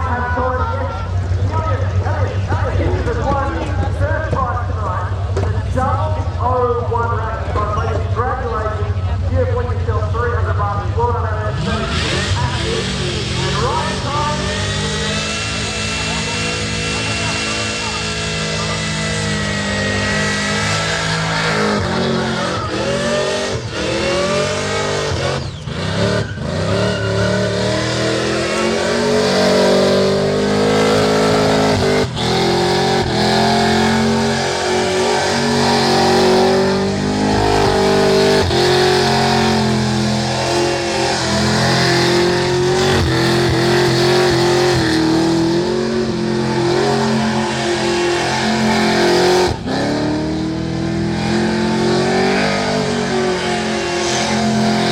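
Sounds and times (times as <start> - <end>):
car engine revving hard: 11.4 - 54.9.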